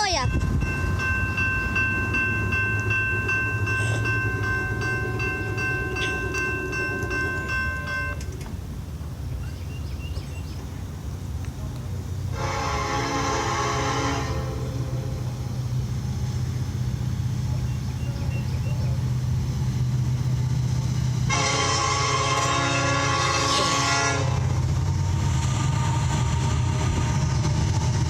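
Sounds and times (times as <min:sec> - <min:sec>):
passing train rumble: 0:00.0 - 0:28.0
locomotive air horn: 0:12.3 - 0:15.4, 0:21.3 - 0:24.6, 0:25.6 - 0:27.0.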